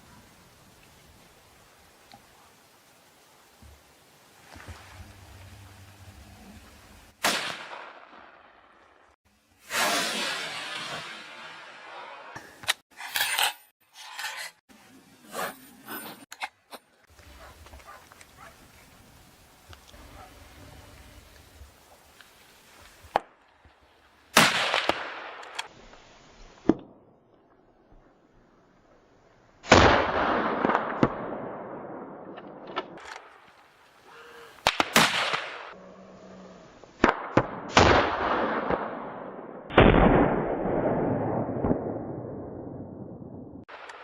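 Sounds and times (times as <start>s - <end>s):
gunshots with rolling echo: 7.2s - 9.1s, 37.0s - 44.0s.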